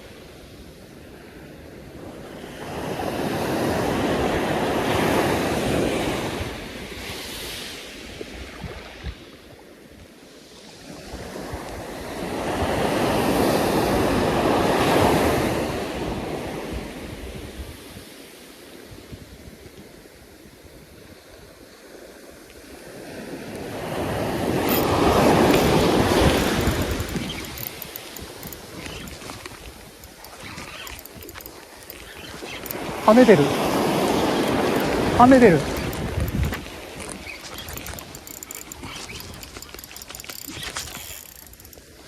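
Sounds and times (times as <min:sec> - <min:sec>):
ocean waves breaking: 0:22.6 - 0:42.0
wind on microphone: 0:23.7 - 0:42.0.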